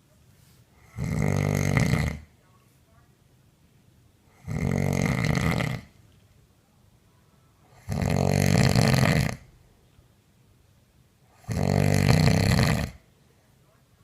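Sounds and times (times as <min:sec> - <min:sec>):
woman snoring: 0:00.8 - 0:02.3, 0:04.3 - 0:05.9, 0:07.7 - 0:09.5, 0:11.4 - 0:13.0.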